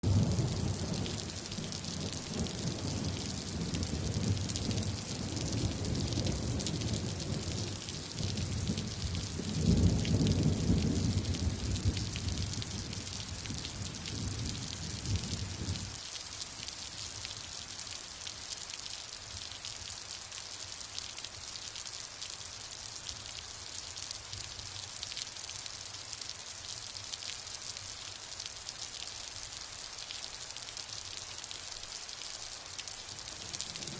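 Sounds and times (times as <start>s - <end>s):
thunder rumbling: 0.0s - 15.9s
steady rain hiss: 0.0s - 33.9s.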